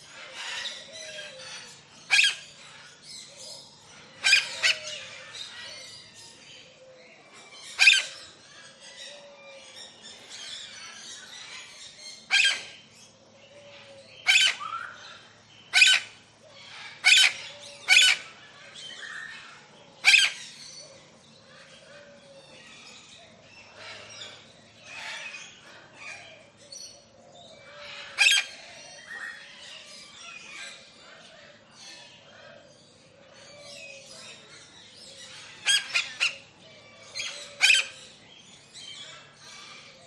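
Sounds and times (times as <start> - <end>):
birds chirping and whistling: 0.0 - 40.0
harsh bird calls: 0.0 - 40.0.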